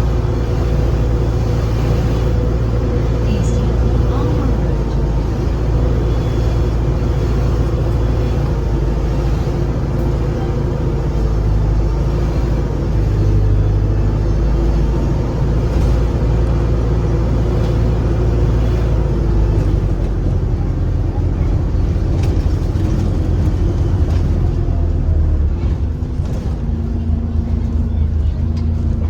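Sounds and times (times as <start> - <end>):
bus engine under load: 0.0 - 29.0.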